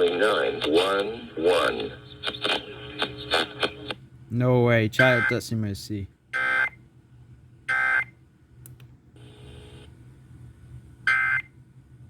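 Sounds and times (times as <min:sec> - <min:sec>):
faint buzz: 0:09.2 - 0:10.0.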